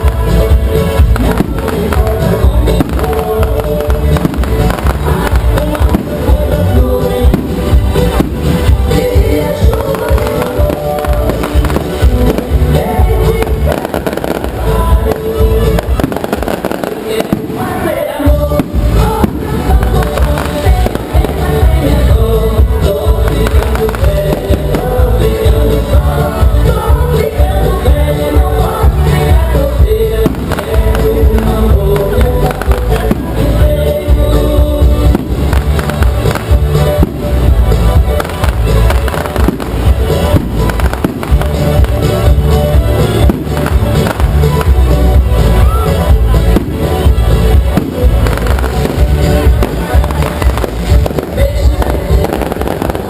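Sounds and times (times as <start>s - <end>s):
music playing: 0.0s - 53.0s
person singing: 0.0s - 53.0s
firecracker pops: 0.9s - 6.4s, 15.7s - 17.7s, 23.3s - 24.8s, 35.1s - 37.4s, 38.1s - 42.2s, 43.2s - 44.8s, 47.6s - 53.0s.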